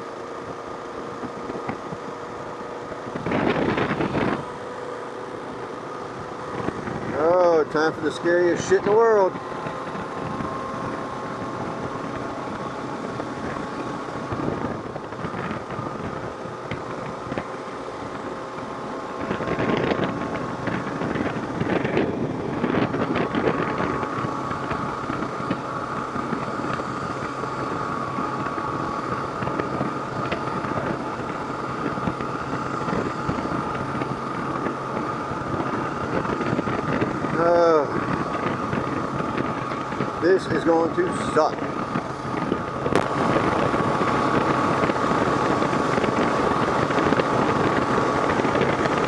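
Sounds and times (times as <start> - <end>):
motorcycle engine running: 0.0 - 49.0
wind noise rushing: 1.2 - 49.0.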